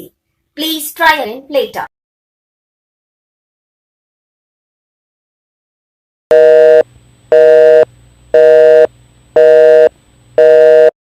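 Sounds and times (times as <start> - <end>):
telephone busy tone beeps: 6.3 - 11.0.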